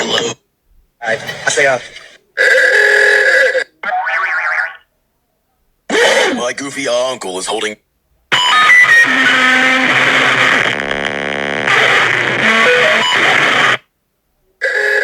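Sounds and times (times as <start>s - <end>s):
music with guitar-like tones: 8.4s - 13.8s.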